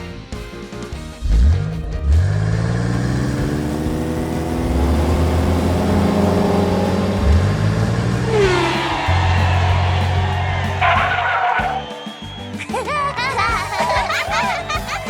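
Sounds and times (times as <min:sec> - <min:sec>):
car engine revving: 0:01.2 - 0:11.9.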